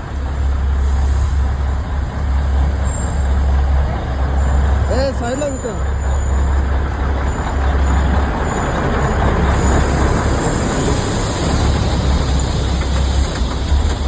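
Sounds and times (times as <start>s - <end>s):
train rumbling: 0.0s - 14.0s.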